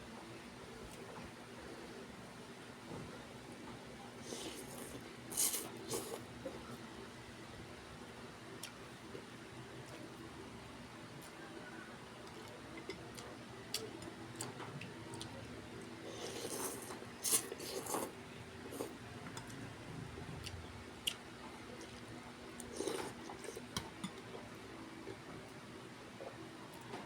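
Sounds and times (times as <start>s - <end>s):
chewing with small clicks: 8.6s - 10.0s, 12.2s - 18.1s, 20.4s - 25.2s.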